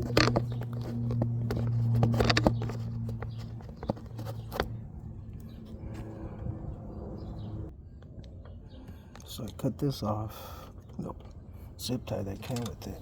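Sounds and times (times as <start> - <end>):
rustling of hands handling parts: 0.0 - 4.8.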